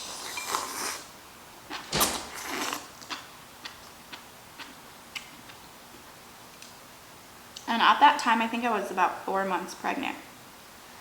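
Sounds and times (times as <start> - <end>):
slurping soup: 0.0 - 1.2, 2.3 - 3.0
soft chewing clicks: 3.0 - 5.6.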